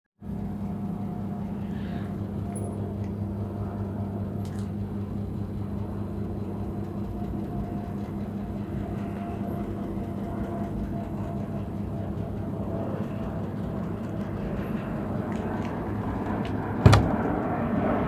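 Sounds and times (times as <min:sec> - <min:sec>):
washing machine motor hum: 0:00.2 - 0:18.0.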